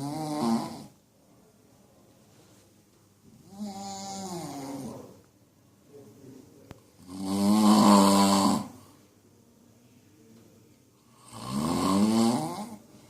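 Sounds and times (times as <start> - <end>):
man snoring: 0.0 - 1.0, 3.5 - 5.1, 7.0 - 8.8, 11.1 - 12.9
quiet breathing: 0.8 - 7.1, 8.6 - 13.0.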